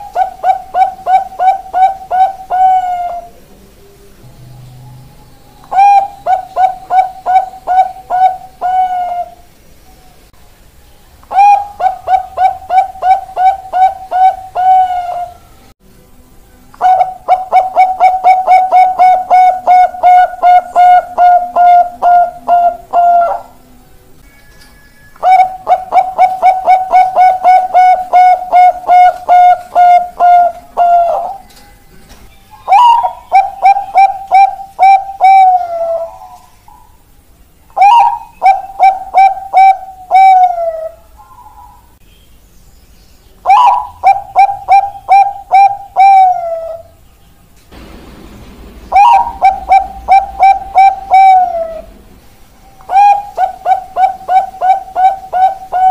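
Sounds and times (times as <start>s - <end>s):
dove cooing: 0.0s - 3.5s, 5.6s - 9.5s, 11.3s - 15.5s, 16.8s - 23.6s, 25.2s - 31.6s, 32.6s - 37.0s, 37.8s - 42.0s, 43.4s - 47.0s, 48.9s - 52.0s, 52.8s - 55.9s.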